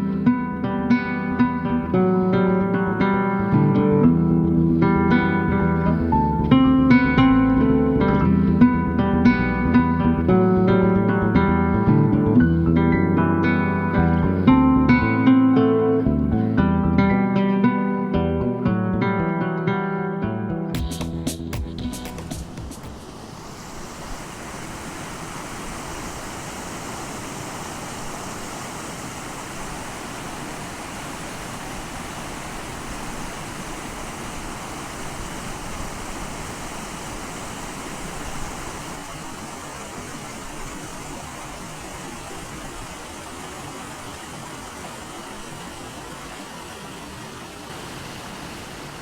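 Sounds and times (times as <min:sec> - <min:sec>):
waterfall rushing: 0:22.4 - 0:49.0.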